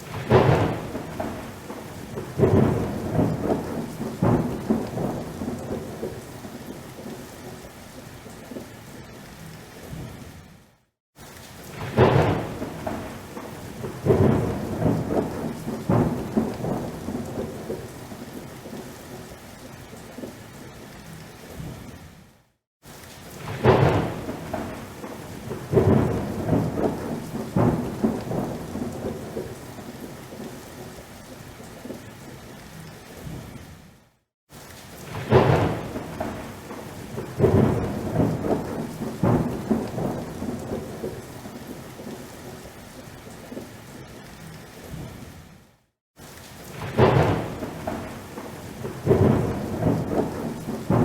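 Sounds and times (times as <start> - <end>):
thunder cracks and rumbling: 0.0 - 6.5, 11.7 - 18.8, 23.4 - 30.0, 35.0 - 42.2, 46.7 - 51.0
steady rain: 0.0 - 51.0.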